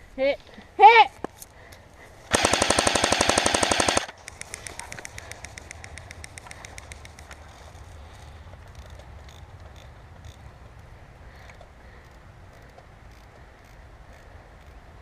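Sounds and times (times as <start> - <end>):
airsoft gun rapid firing: 2.3 - 4.6.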